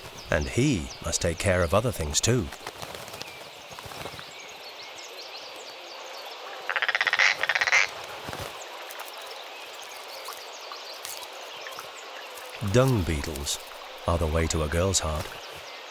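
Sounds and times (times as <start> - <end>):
faint bird chirps: 0.0 - 15.9
rapid rattling animal call: 6.7 - 8.5.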